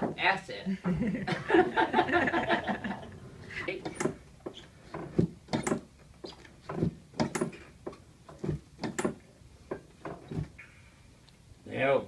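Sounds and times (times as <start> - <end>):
sharp knocks and thumps: 0.0 - 0.2, 3.8 - 10.8.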